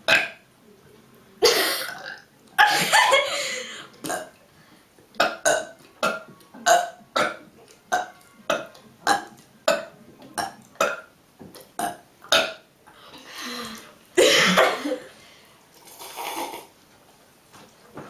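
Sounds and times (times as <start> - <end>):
breathing: 3.4 - 5.0, 12.9 - 14.0, 15.1 - 15.6.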